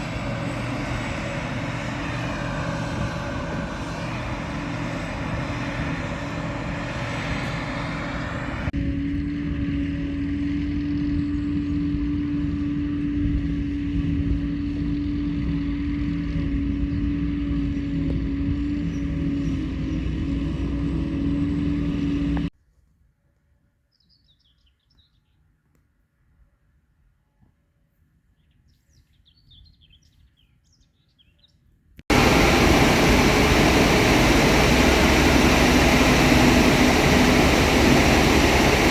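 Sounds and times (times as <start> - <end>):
steady machine whine: 0.0 - 12.2, 15.8 - 22.5, 32.1 - 38.9
farm machinery engine drone: 0.0 - 22.5, 32.1 - 38.9.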